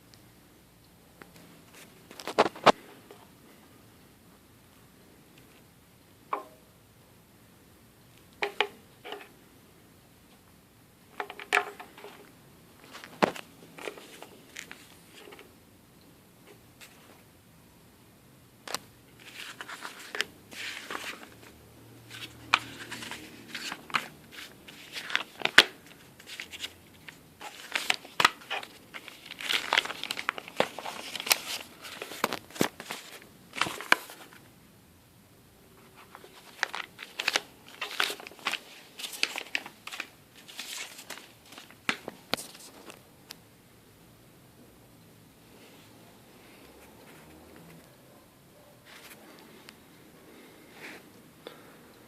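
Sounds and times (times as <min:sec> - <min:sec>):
packaging crinkling and rustling: 0:01.7 - 0:02.8, 0:11.2 - 0:15.4, 0:22.1 - 0:34.5, 0:36.0 - 0:43.0.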